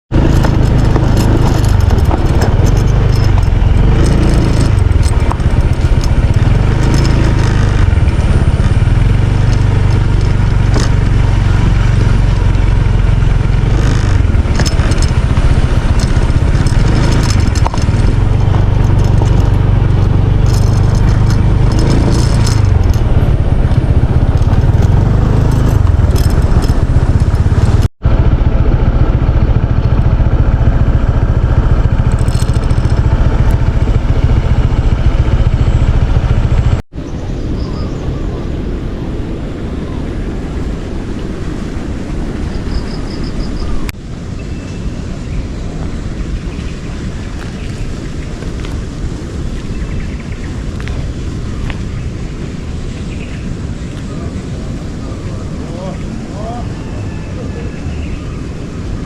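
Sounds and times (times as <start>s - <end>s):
engine revving: 0.1s - 36.9s.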